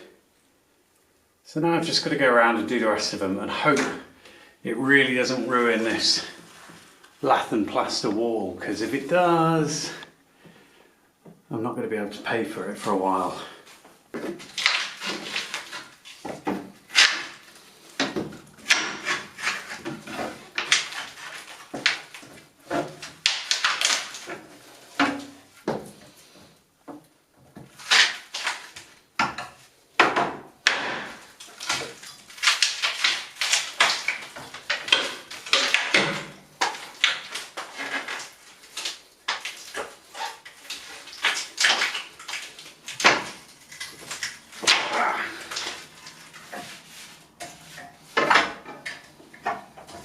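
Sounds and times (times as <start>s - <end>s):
wood and plaster creaking and cracking: 2.7s - 4.1s, 12.7s - 50.0s.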